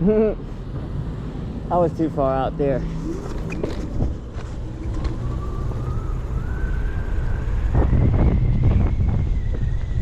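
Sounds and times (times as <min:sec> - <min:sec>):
electric scooter motors whining: 0:02.8 - 0:10.0
wind rumble on microphone: 0:02.8 - 0:10.0.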